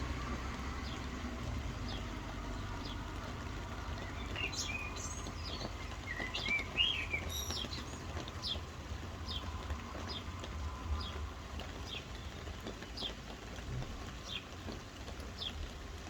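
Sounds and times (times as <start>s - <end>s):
soft rain hiss: 0.0s - 16.0s
small birds chirping: 1.9s - 10.4s, 11.0s - 13.3s, 14.2s - 14.6s.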